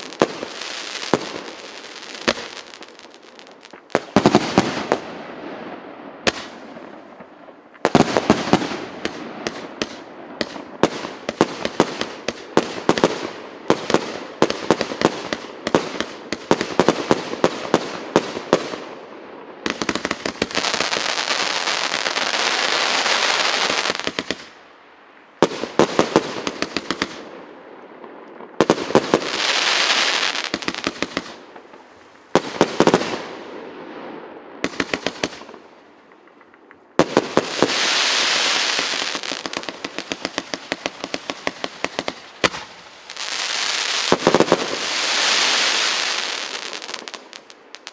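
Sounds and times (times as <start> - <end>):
firework shots and bursts: 0.0 - 24.6, 25.4 - 33.8, 34.5 - 47.9
firework hissing: 37.3 - 47.8.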